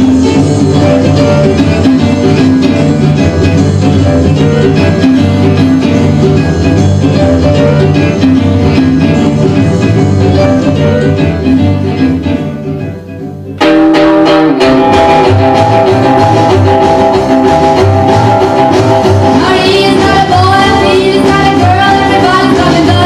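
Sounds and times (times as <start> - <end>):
band with guitar: 0.0 - 23.0
recorded music: 0.0 - 23.0
person singing: 19.3 - 23.0.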